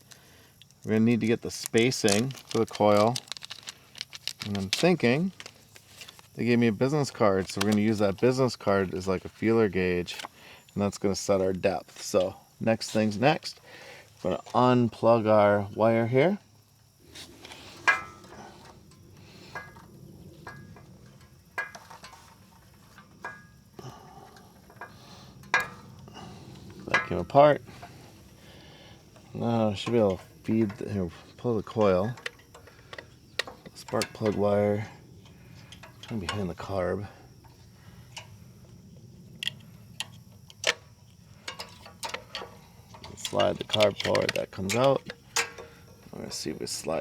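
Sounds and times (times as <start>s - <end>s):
steady low hum: 0.0s - 47.0s
light clicks and knocks: 39.4s - 46.1s.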